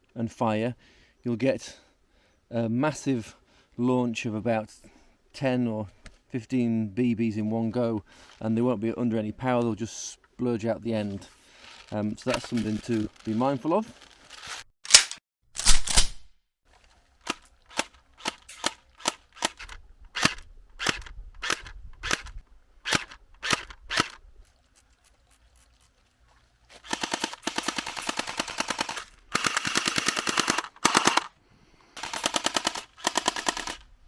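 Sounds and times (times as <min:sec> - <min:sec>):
airsoft gun firing: 0:26.8 - 0:31.3, 0:32.0 - 0:33.8.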